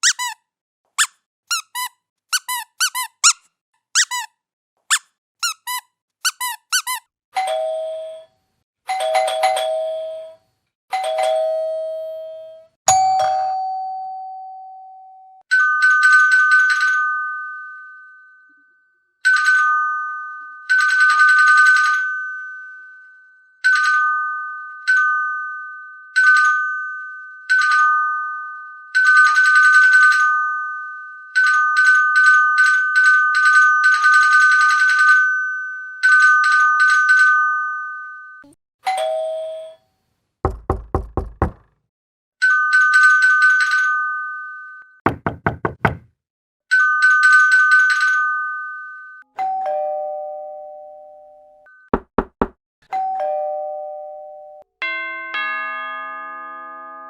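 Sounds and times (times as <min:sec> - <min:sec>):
squeaky toy squeaking: 0:00.0 - 0:07.1
doorbell chimes: 0:11.0 - 0:15.4, 0:52.9 - 0:57.0.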